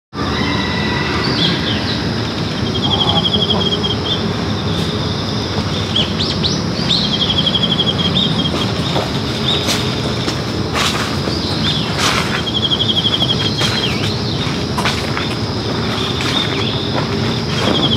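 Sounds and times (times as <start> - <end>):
buzzy bird trills: 0.2 - 10.2, 11.2 - 14.7
birds chirping: 0.2 - 17.9
low rumbling background noise: 0.2 - 17.9.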